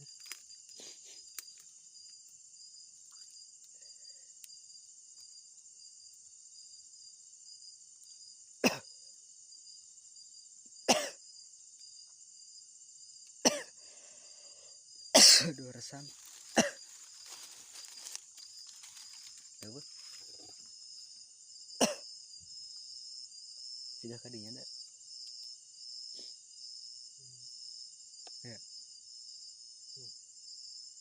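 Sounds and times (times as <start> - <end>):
man coughing: 8.6 - 8.8, 10.9 - 11.2, 13.4 - 13.7, 15.2 - 15.7, 16.5 - 16.8, 21.8 - 22.0.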